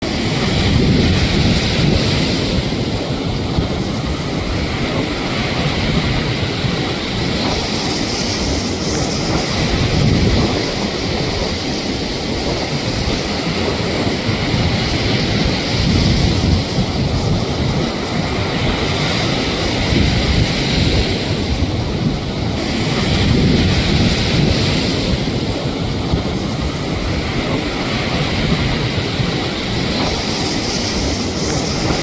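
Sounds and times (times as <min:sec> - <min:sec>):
wind buffeting microphone: 0:00.0 - 0:32.0.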